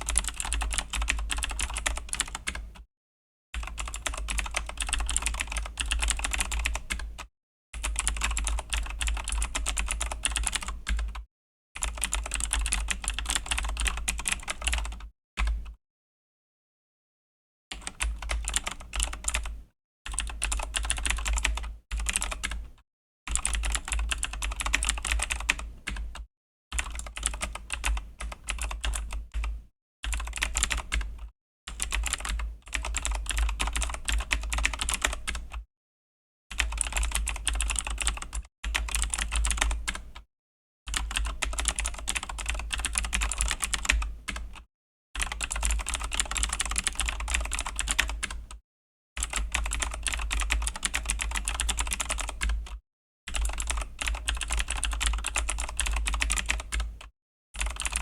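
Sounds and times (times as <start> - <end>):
fast typing on mechanical keyboard: 0.0 - 2.7, 3.6 - 7.2, 7.8 - 11.2, 11.8 - 15.0, 17.8 - 22.6, 23.3 - 26.2, 26.8 - 29.5, 30.1 - 31.2, 31.8 - 35.6, 36.6 - 40.2, 40.9 - 44.6, 45.2 - 48.6, 49.2 - 52.7, 53.3 - 58.0.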